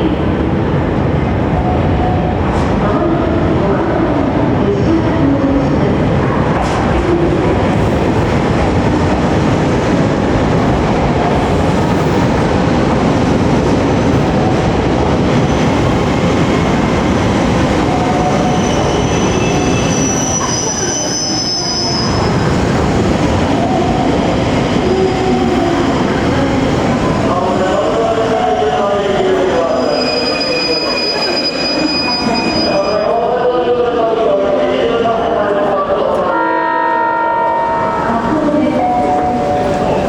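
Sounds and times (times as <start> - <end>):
train wheels rumbling on rail: 0.0 - 32.9
high wheel squeal: 18.4 - 22.5, 29.8 - 33.0.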